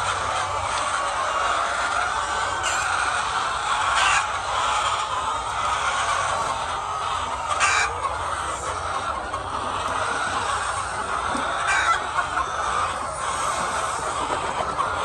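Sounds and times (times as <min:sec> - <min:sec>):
hens clucking: 0:00.0 - 0:15.0.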